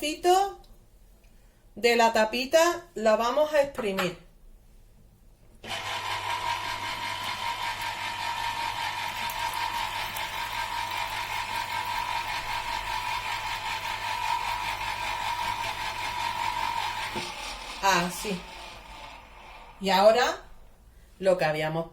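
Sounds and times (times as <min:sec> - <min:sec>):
electric juicer motor whine: 0:05.6 - 0:20.0.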